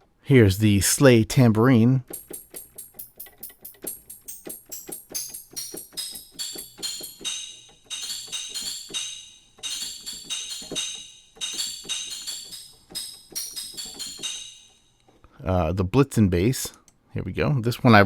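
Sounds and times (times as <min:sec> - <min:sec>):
tambourine jingle hits: 0:02.2 - 0:14.9.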